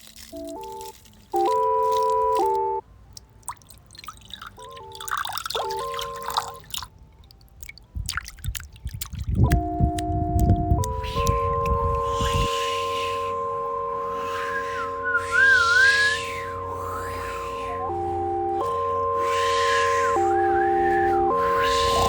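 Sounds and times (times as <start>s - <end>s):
water dripping and trickling: 0.0s - 12.5s
synthesizer chords: 0.4s - 2.8s, 4.6s - 6.8s, 9.5s - 22.0s.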